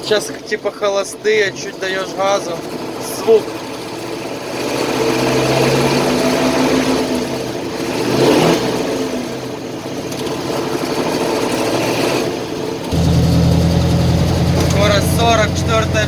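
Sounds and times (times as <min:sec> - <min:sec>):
truck engine idling with knock: 0:12.9 - 0:16.0.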